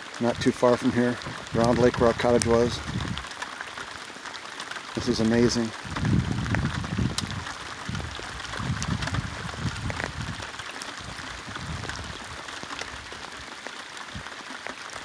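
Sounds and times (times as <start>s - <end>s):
rain falling on water and canoe: 0.0s - 15.0s
low rumbling: 0.2s - 3.3s, 5.0s - 12.2s.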